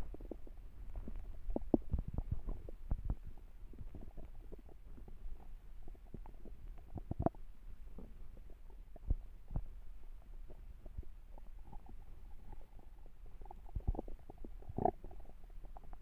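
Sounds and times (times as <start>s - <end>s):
stomach growling: 0.0s - 16.0s.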